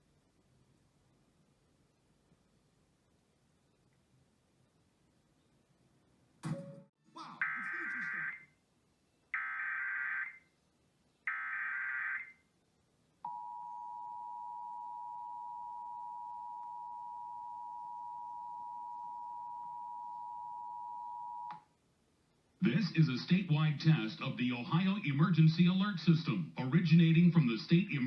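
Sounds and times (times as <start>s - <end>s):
two-tone alarm: 7.4s - 8.5s, 9.4s - 10.4s, 11.3s - 12.4s, 13.3s - 21.6s.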